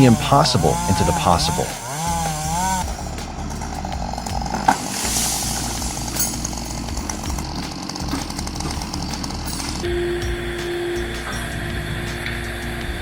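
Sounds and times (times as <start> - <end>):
chainsaw cutting wood: 0.0 - 9.9.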